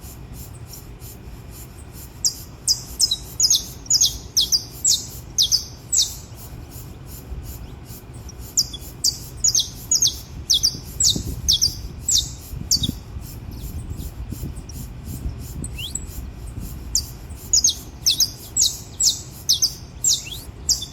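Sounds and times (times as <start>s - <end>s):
finch singing: 0.0s - 20.9s.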